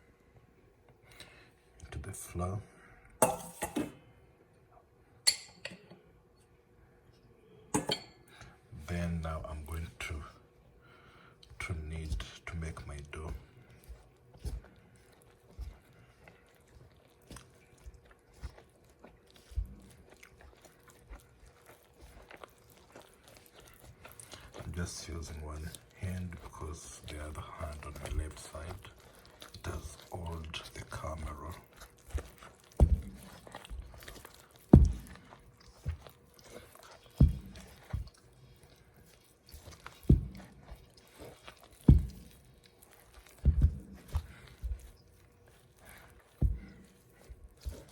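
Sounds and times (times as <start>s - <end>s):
dough squishing while kneaded: 0.0s - 4.8s, 6.8s - 47.9s
dull thumps of dough: 30.8s - 47.9s
dough thumping on work surface: 34.8s - 35.1s, 37.2s - 38.1s, 41.9s - 42.3s.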